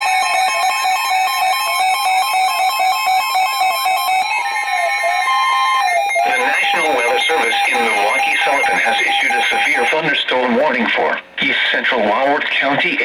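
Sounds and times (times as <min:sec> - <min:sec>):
electronic chime-like tones: 0:03.5 - 0:10.0.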